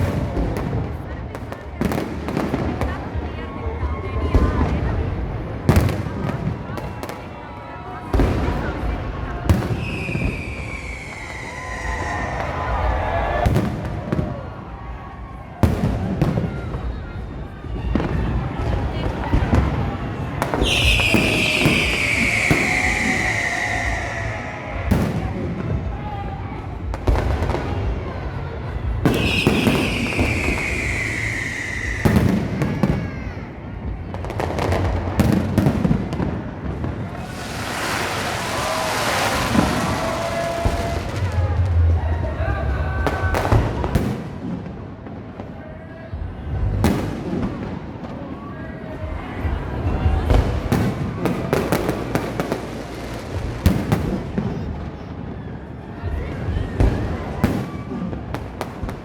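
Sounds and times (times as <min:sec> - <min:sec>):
fireworks bangs and crackles: 0:00.0 - 0:59.0
falling firework whistle: 0:09.5 - 0:14.4, 0:20.4 - 0:25.5, 0:29.0 - 0:33.2, 0:37.1 - 0:41.6
low rumble: 0:40.7 - 0:43.1.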